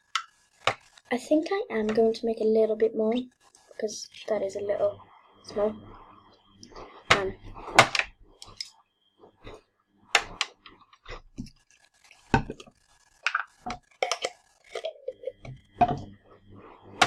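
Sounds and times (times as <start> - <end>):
plastic bottles knocking and scraping: 7.1 - 8.7, 10.2 - 16.2.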